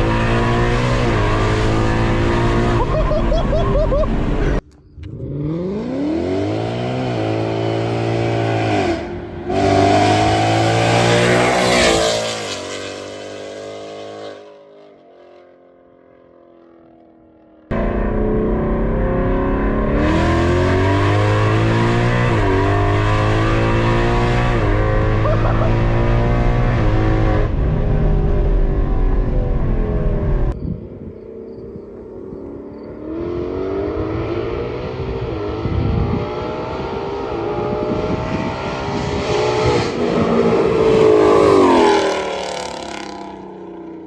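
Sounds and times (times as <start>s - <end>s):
loud car exhaust: 0.0s - 11.9s, 17.7s - 30.6s
car engine accelerating: 0.0s - 15.4s, 17.7s - 30.6s, 31.5s - 44.0s.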